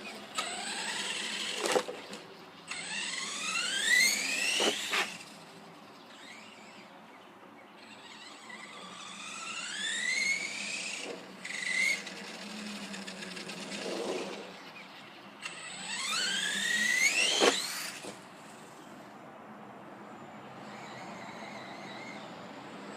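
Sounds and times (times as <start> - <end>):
electric motor whining: 0.0 - 5.4, 7.8 - 14.8, 15.4 - 18.2.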